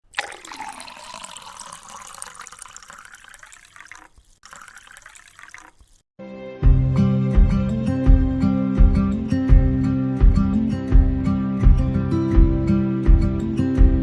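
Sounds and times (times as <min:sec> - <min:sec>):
water pouring into a pot: 0:00.0 - 0:06.0.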